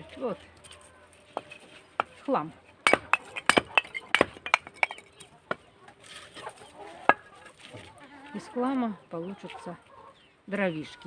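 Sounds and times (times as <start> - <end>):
sharp clinks and knocks: 2.9 - 5.3.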